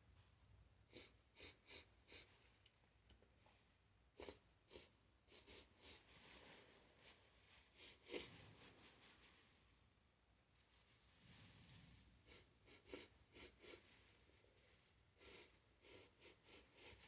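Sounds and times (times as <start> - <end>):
quick nose sniffs: 4.2 - 6.8, 7.7 - 9.0, 11.3 - 14.1, 15.2 - 17.0
breathing: 4.2 - 9.2, 11.2 - 17.0.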